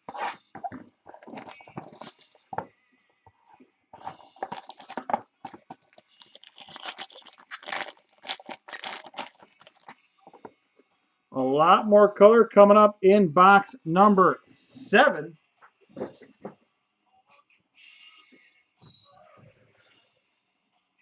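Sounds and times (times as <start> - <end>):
wrappers crinkling and tearing: 1.2 - 2.3, 4.4 - 10.0.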